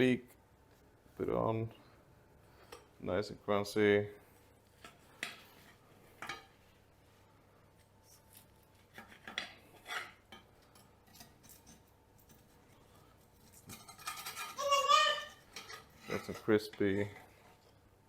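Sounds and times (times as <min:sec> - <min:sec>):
kitchen utensil scrapes and snips: 0:08.1 - 0:11.9, 0:13.4 - 0:14.6.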